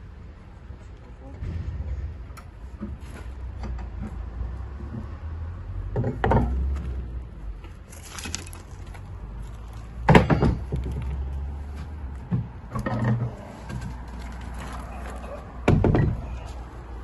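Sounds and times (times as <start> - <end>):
steady low hum: 1.2 - 4.8
sharp knocks and clatters: 1.4 - 7.0, 9.6 - 11.4.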